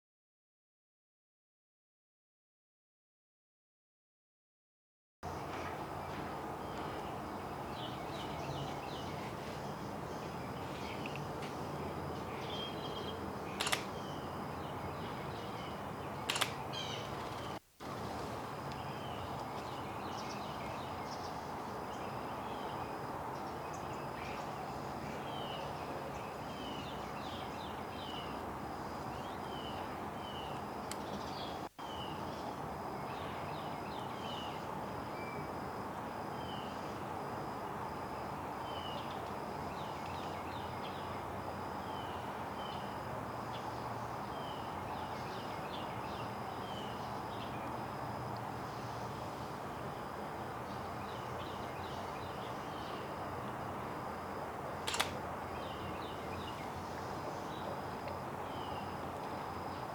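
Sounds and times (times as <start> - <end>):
steady background hiss: 5.3 - 59.9
small birds chirping: 5.4 - 22.8.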